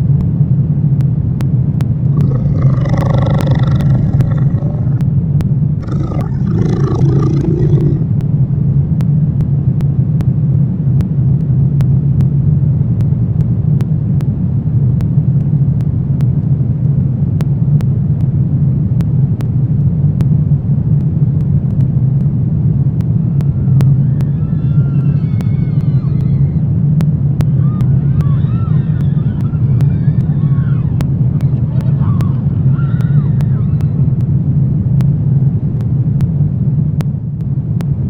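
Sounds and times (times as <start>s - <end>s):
low rumbling drone: 2.1s - 8.6s
growling roar: 2.2s - 5.0s, 5.8s - 8.2s.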